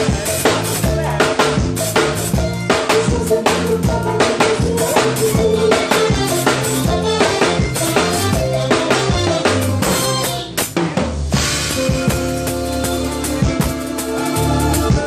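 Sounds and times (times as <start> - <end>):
drum-kit beat with rimshots: 0.0 - 15.0
held bass notes: 0.0 - 15.0
keyboard notes: 0.0 - 15.0.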